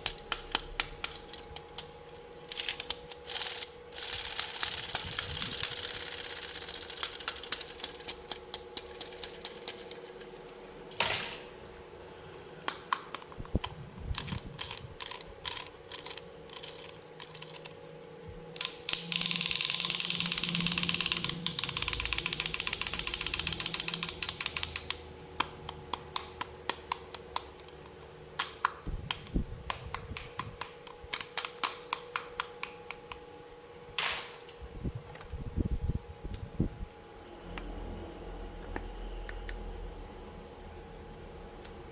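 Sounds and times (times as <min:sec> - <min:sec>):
plastic toy pieces clicking: 0:14.2 - 0:17.8, 0:18.6 - 0:25.0.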